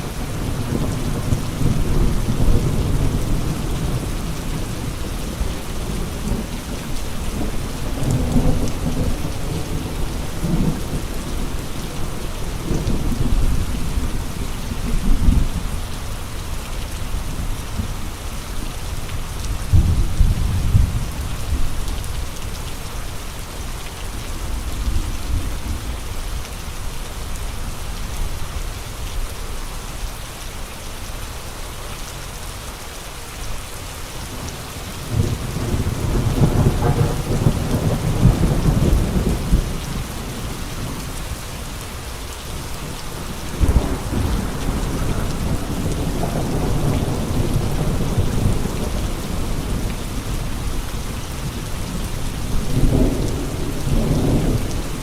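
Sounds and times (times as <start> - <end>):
steady rain: 0.0 - 55.0
gusting wind: 34.2 - 55.0.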